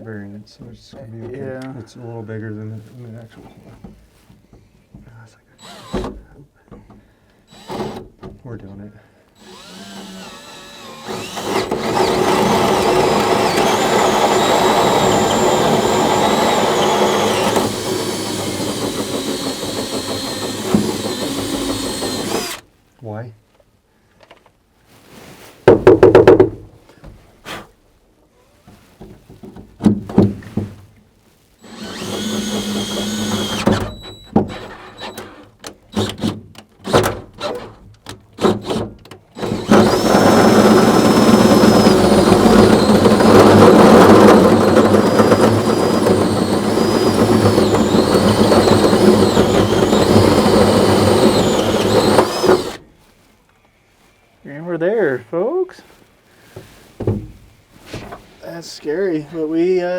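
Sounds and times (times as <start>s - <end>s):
power drill drilling into metal: 5.6s - 6.2s, 7.5s - 8.1s, 9.4s - 22.6s, 31.6s - 37.7s, 38.4s - 52.8s
knocks: 25.7s - 27.2s, 57.0s - 57.4s.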